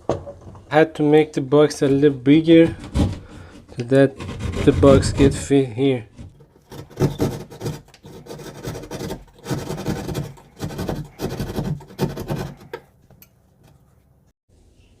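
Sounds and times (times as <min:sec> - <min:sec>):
hand tool scraping drywall: 0:02.5 - 0:13.0.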